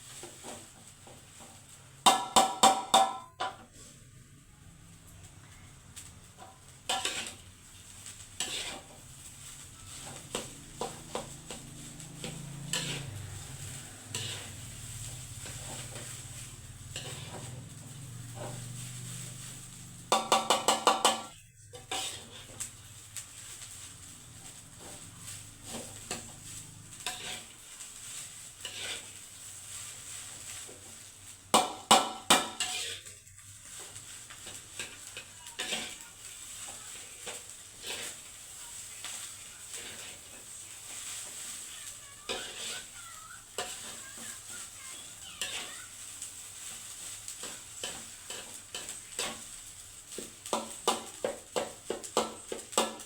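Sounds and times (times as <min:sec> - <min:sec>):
rice sizzling in a pan: 0:00.0 - 0:53.0
metal clanks against pan: 0:02.0 - 0:03.7, 0:06.4 - 0:07.4, 0:20.0 - 0:22.6, 0:31.5 - 0:33.2, 0:50.1 - 0:53.0
utensil scraping and stirring: 0:06.0 - 0:53.0.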